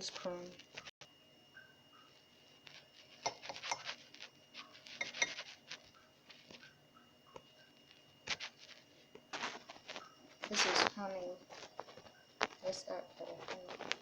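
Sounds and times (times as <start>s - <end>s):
spoon clinking against dish: 5.0s - 5.4s.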